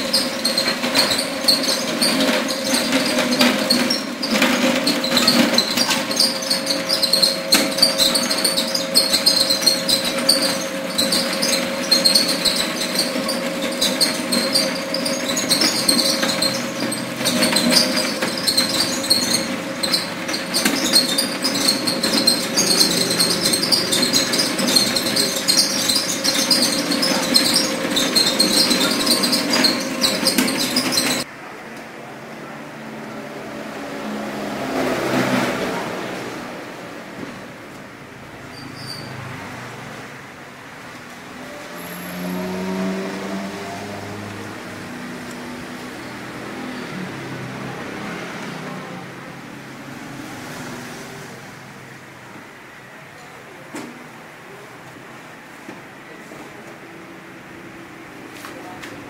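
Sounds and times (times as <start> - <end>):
meat-shredding machine running: 0.0 - 31.2.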